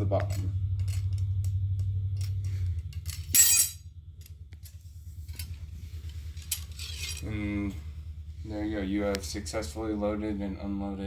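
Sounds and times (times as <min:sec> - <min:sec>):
metallic clatter: 0:00.0 - 0:07.4
low steady hum: 0:00.0 - 0:11.0
metal ramrod clicking and scraping: 0:00.3 - 0:07.3.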